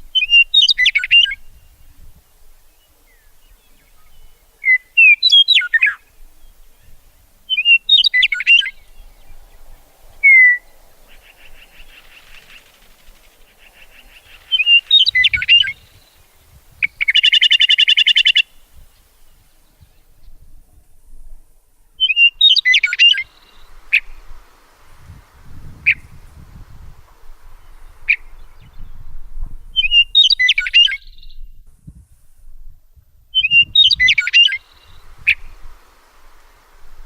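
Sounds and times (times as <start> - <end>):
songbirds chirping and whistling: 0.0 - 20.5, 21.8 - 31.6, 33.3 - 37.0
loud rapid bird trill: 7.5 - 18.6.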